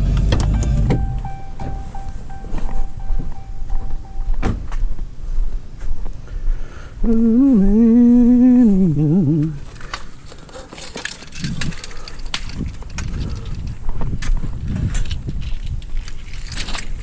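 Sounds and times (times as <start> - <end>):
man humming: 7.0 - 9.6.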